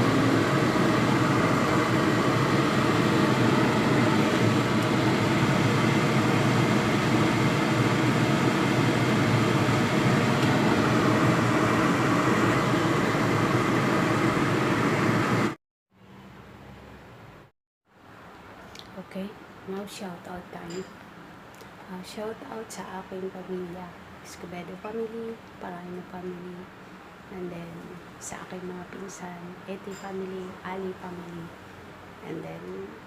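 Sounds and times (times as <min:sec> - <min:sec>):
stovetop rushing noise: 0:00.0 - 0:15.6.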